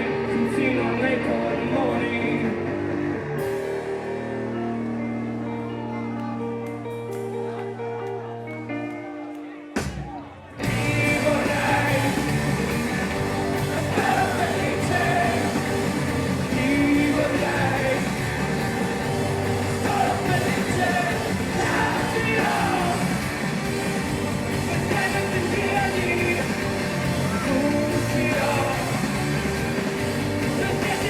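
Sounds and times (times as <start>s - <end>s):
man singing: 0.0s - 2.8s, 10.6s - 12.6s, 13.4s - 18.7s, 19.8s - 23.4s, 24.5s - 29.3s, 30.4s - 31.0s
rock band playing live: 0.0s - 31.0s.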